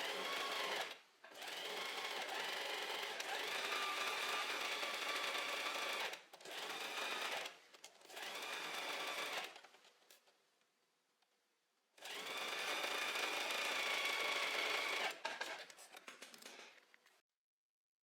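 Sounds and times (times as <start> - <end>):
sewing machine stitching: 0.0 - 9.7, 12.0 - 16.8.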